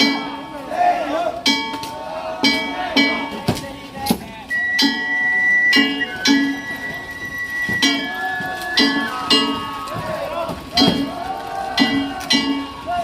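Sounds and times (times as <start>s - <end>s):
drum beating: 2.4s - 13.0s
held high note: 4.5s - 10.0s.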